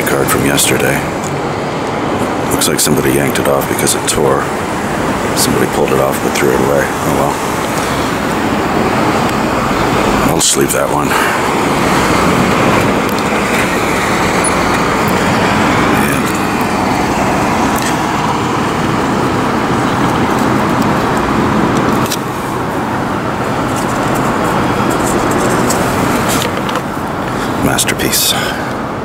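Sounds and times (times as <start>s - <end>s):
city street traffic: 0.0s - 29.0s.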